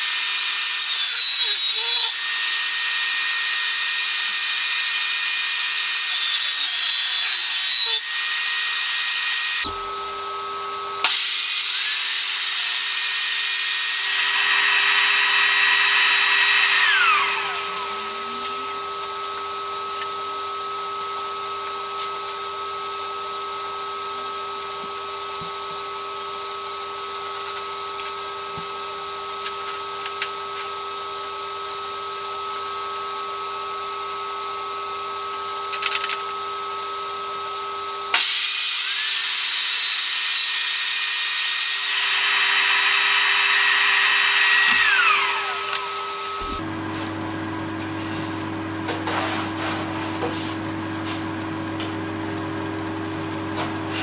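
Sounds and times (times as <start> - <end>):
electric power tool whining: 0.0 - 19.6, 38.2 - 46.8.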